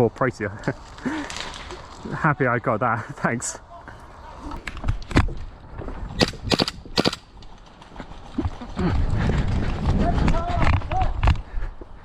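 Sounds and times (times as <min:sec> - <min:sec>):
airsoft gunshots: 0:06.2 - 0:07.3.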